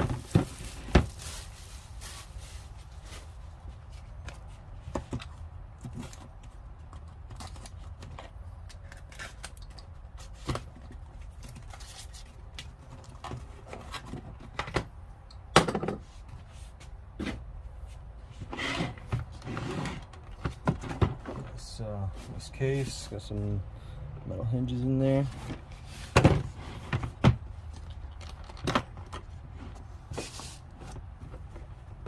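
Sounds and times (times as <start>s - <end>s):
tools and packaging handled: 0.0s - 14.8s, 25.3s - 32.0s
light clicks rustles and knocks: 25.4s - 32.0s.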